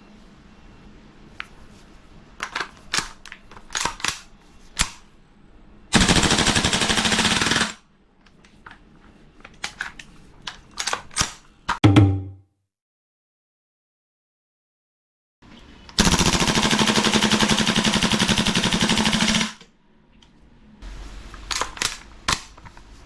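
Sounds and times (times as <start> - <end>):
airsoft gun full-auto burst: 5.9 - 7.8, 16.0 - 19.6.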